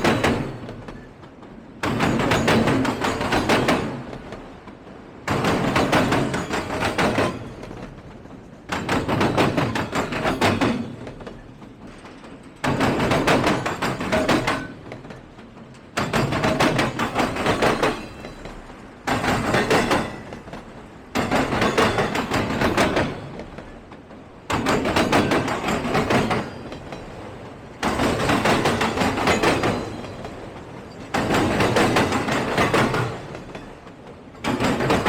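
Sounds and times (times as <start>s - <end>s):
train wheels clattering over track: 0.0s - 35.0s.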